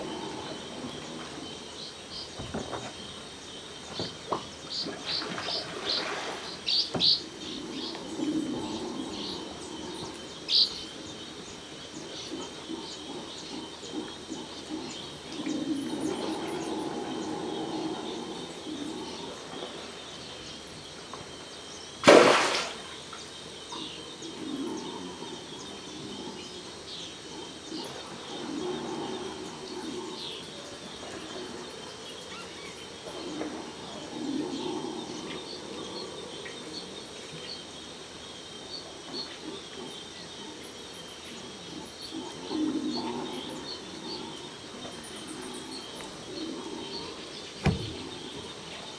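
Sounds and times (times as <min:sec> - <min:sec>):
howler monkeys roaring: 0:00.0 - 0:01.9, 0:07.3 - 0:20.4, 0:23.7 - 0:37.2, 0:41.4 - 0:48.9
high chirring of birds and insects: 0:00.0 - 0:48.9.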